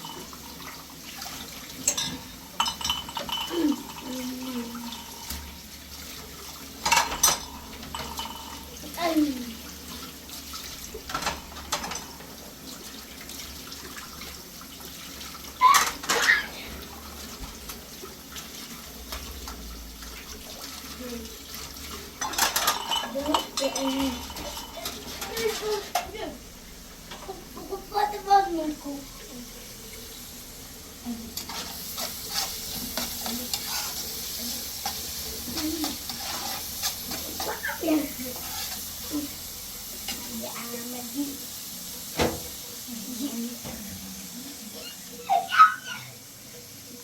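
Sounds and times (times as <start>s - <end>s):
food sizzling: 0.0s - 47.0s
tap water running: 0.0s - 47.0s
utensil scraping in a pan: 20.6s - 26.4s, 31.1s - 41.2s.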